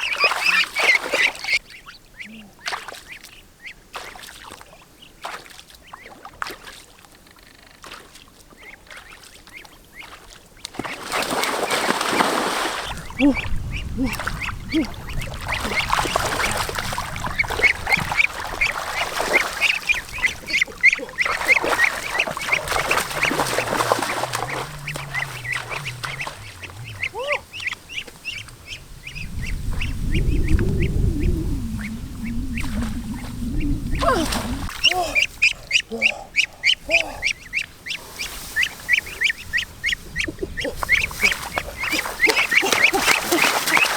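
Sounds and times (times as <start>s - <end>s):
ducks quacking: 0.0s - 6.2s, 8.6s - 43.9s
low rumble: 21.6s - 34.8s.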